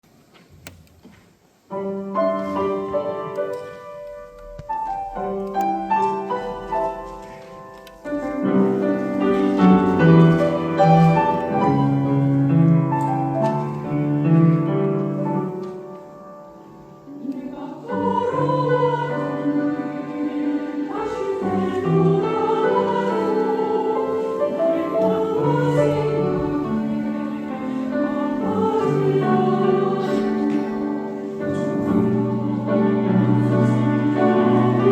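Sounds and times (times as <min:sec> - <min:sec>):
piano accompaniment: 0:01.7 - 0:34.9
choir singing: 0:08.0 - 0:15.8, 0:16.8 - 0:34.9.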